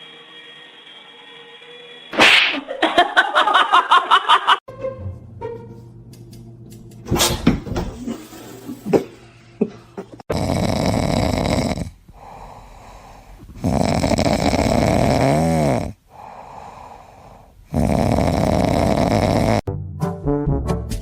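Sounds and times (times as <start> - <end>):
loud snoring: 10.2 - 19.7
breathing: 12.1 - 13.6, 16.1 - 17.7.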